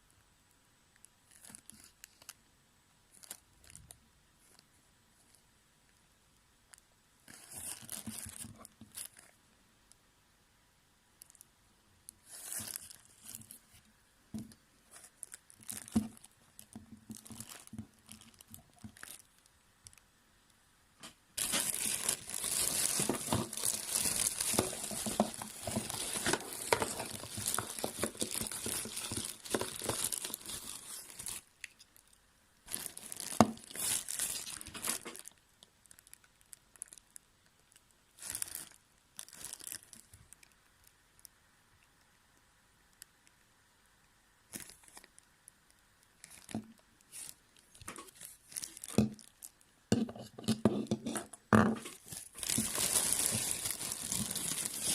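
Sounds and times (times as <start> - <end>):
packaging crinkling: 1.3 - 2.4, 7.3 - 9.4, 12.2 - 13.8, 14.4 - 20.0, 21.4 - 37.3, 38.2 - 40.6, 44.5 - 45.2, 46.1 - 54.9
packaging tearing: 21.4 - 31.5, 32.7 - 35.3, 51.8 - 54.9.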